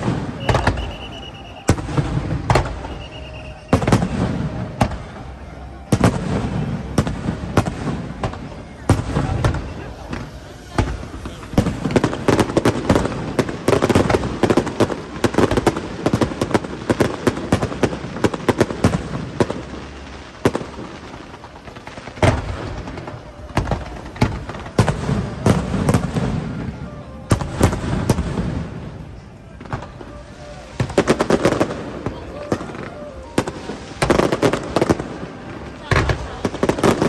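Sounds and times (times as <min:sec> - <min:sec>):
fireworks crackling and banging: 0:00.0 - 0:37.0
loud fireworks booms: 0:00.0 - 0:37.0.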